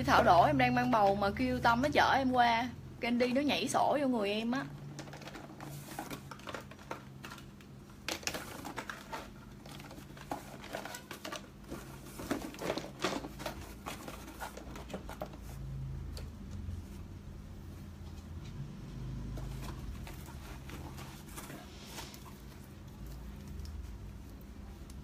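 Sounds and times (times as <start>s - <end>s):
low room hum: 0.0s - 25.0s
packaging crinkling and rustling: 4.8s - 15.7s, 19.3s - 25.0s.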